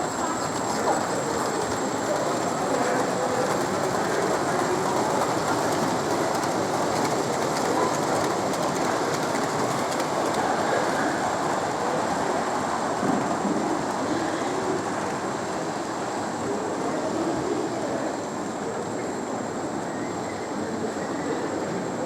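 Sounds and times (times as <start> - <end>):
model train wheels clicking: 0.0 - 12.7.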